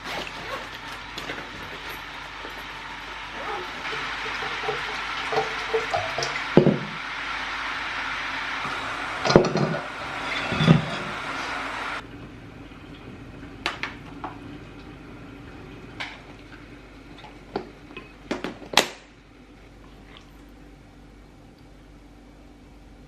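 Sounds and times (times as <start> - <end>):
dishes and utensils clinking: 9.2 - 11.2.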